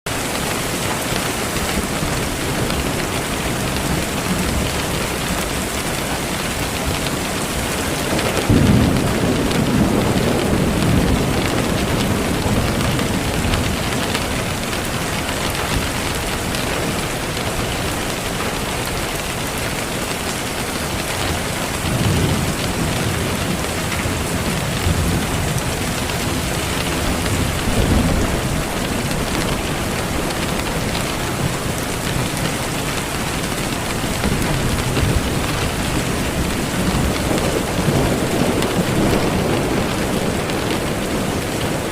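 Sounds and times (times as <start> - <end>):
heavy rain hissing: 0.1 - 41.9
thunder rumbling: 0.1 - 41.9.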